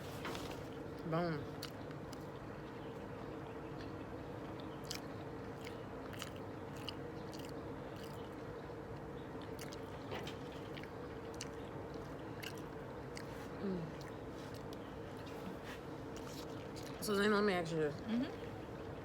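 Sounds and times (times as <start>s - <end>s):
steady low hum: 0.0s - 19.0s
wet chewing and mouth smacks: 1.6s - 2.4s, 3.8s - 17.0s.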